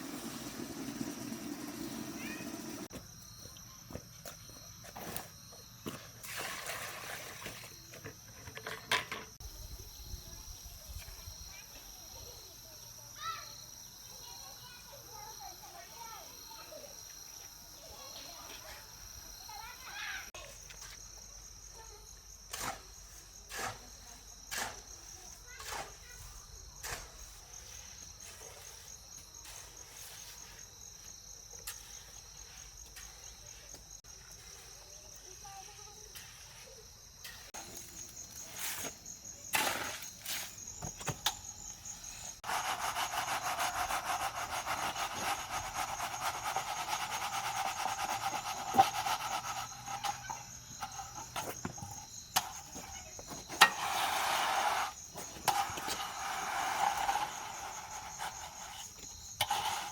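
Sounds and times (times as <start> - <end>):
insects trilling: 0.0 - 59.9
rough scraping: 35.8 - 59.9.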